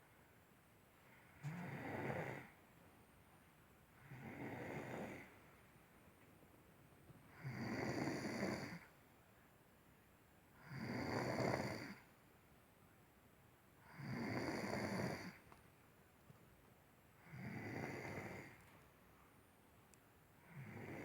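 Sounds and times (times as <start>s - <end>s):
person snoring: 10.6s - 12.0s, 17.2s - 18.6s, 20.4s - 21.0s.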